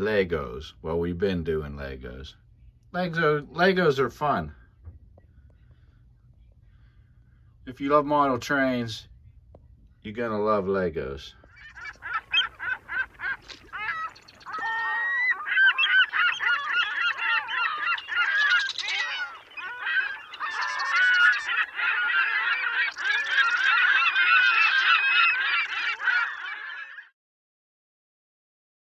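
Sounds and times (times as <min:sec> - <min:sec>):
flock of birds honking: 0:11.5 - 0:27.1.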